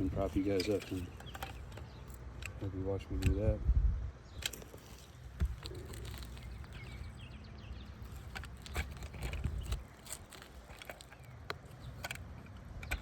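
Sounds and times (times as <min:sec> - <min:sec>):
wind rumbling on microphone: 0:00.0 - 0:13.0
camera handling knocks and clicks: 0:04.4 - 0:07.3.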